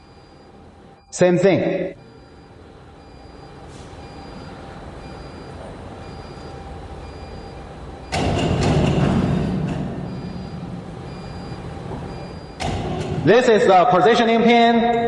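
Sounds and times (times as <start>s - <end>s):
machine humming: 0.0s - 15.0s
loud mechanical clatter: 8.0s - 11.4s.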